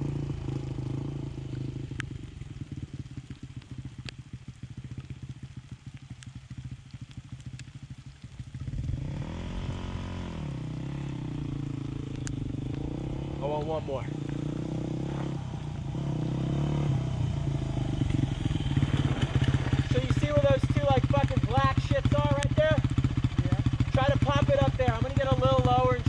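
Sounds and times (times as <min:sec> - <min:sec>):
motorcycle engine revving: 0:00.0 - 0:05.2, 0:08.3 - 0:26.0
sharp clicks: 0:12.1 - 0:12.9.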